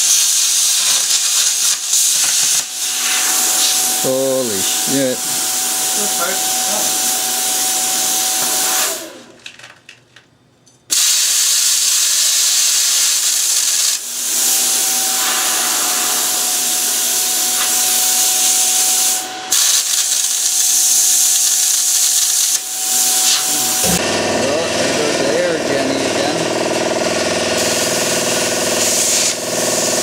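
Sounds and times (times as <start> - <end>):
plasma cutter hissing: 0.0 - 9.2, 10.9 - 24.0, 27.6 - 30.0.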